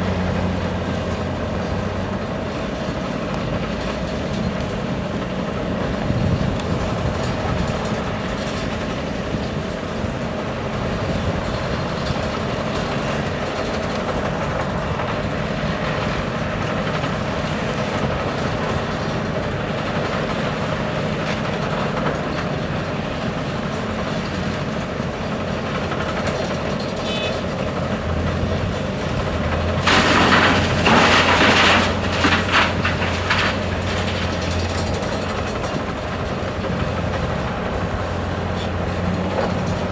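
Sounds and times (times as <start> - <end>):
excavator diesel engine and hydraulics: 0.0 - 39.9
gravel pouring into truck bed: 29.6 - 34.8.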